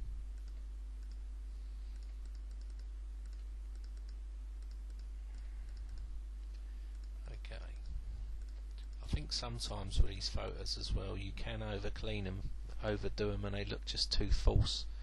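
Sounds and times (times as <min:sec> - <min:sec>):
low electrical hum: 0:00.0 - 0:15.0
mouse and keyboard clicking: 0:02.0 - 0:06.0.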